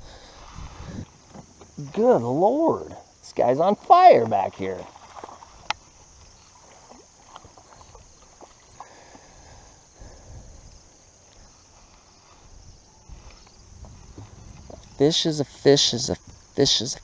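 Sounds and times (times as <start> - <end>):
faint high hiss: 0.0 - 17.0.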